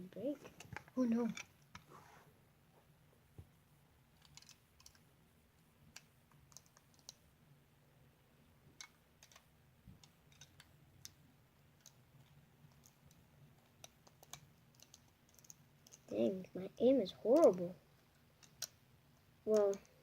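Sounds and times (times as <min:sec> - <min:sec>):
faint light clicks and ticks: 0:05.9 - 0:07.2, 0:11.8 - 0:16.2, 0:17.4 - 0:20.0.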